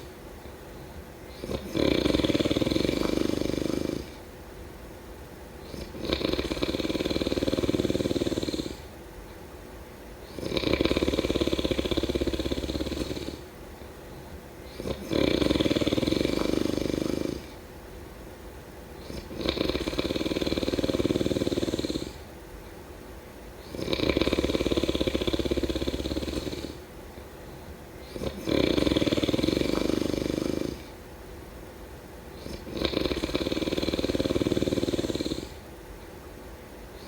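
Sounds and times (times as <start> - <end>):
person snoring: 1.3 - 4.2, 5.6 - 8.9, 10.3 - 13.5, 14.6 - 17.6, 19.0 - 22.2, 23.6 - 26.8, 28.0 - 31.0, 32.4 - 35.6.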